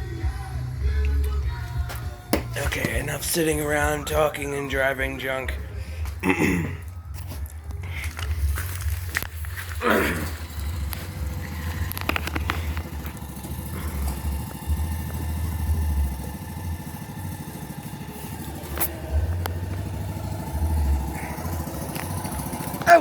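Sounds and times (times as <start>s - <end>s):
sharp knocks: 2.3s - 3.1s
small engine running: 7.4s - 23.0s.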